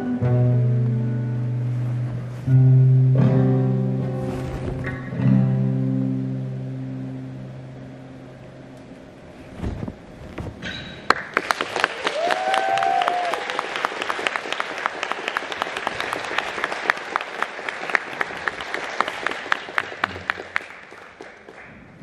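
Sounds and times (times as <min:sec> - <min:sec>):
audience applauding: 0:11.1 - 0:22.0.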